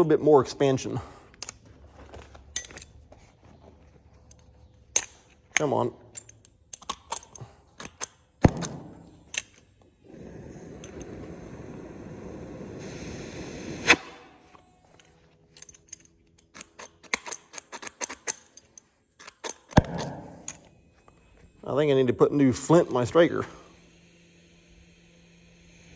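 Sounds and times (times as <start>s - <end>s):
flint striker snapping: 4.3s - 9.7s, 14.9s - 20.7s
gas hissing from torch: 10.0s - 14.5s.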